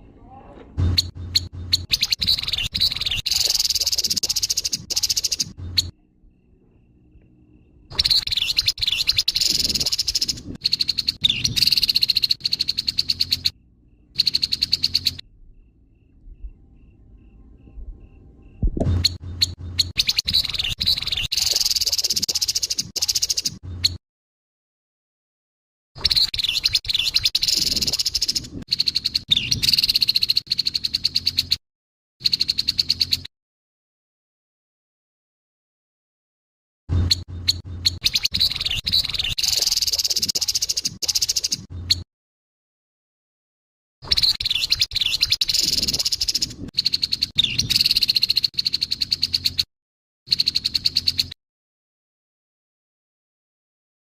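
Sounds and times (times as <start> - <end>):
bird chattering call: 0.8 - 5.9, 8.0 - 13.6, 14.2 - 15.2.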